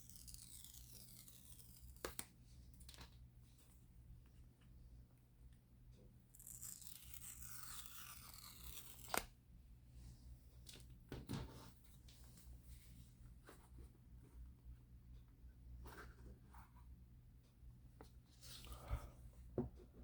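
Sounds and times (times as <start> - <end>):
seal strip tearing: 6.4 - 9.3.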